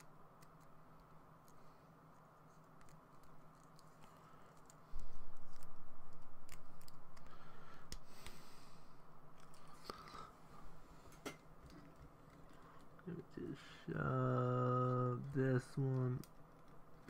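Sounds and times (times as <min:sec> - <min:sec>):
low pulsing hum: 0:00.0 - 0:11.0.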